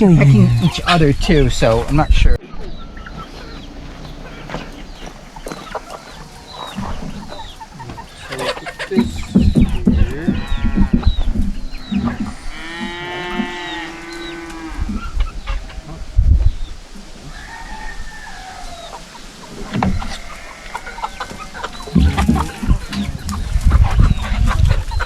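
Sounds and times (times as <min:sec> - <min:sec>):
chickens clucking and squawking: 0:00.0 - 0:25.0
long drawn-out call: 0:03.1 - 0:09.2.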